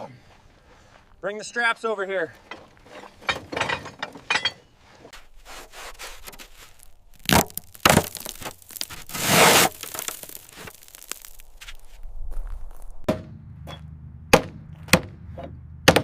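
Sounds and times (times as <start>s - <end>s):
crunching and scraping handling: 1.8s - 13.1s
rasping scrape: 2.6s - 6.9s, 8.2s - 10.8s
sharp cracks: 6.8s - 11.8s.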